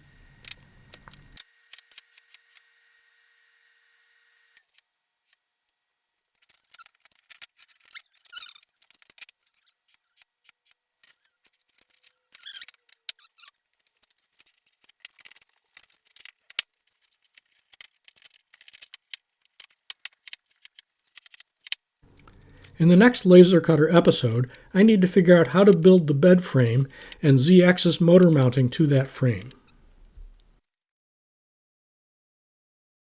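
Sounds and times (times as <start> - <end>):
small parts and tools clicking: 0.4 - 2.7, 4.6 - 22.8
short squeaks: 6.5 - 8.8, 11.0 - 13.6.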